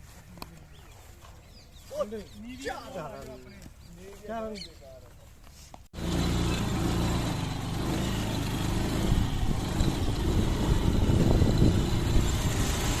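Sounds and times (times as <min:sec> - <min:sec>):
vehicle engine rumbling: 0:06.0 - 0:13.0.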